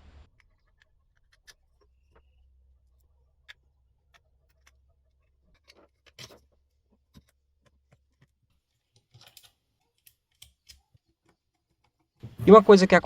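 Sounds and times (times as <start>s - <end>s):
clicks and scrapes of parts handled: 0.3s - 2.3s, 2.9s - 12.2s.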